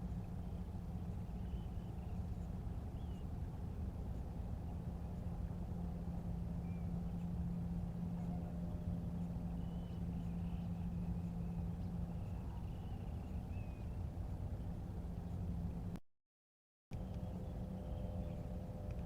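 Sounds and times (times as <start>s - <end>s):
distant motor humming: 0.0s - 16.0s, 17.0s - 19.0s
faint high-pitched bird calls: 8.0s - 14.1s.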